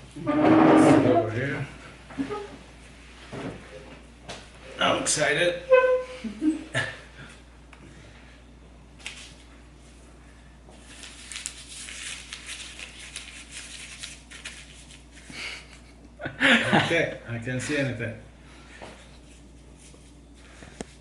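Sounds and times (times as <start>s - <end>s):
material rustling and crinkling: 10.8s - 15.2s.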